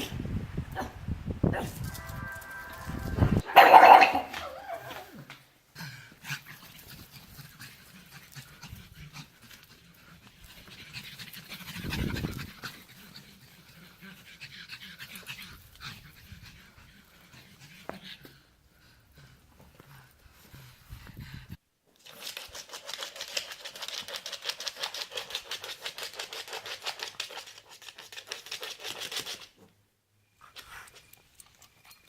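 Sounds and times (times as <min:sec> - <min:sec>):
dog panting: 0:05.8 - 0:21.6.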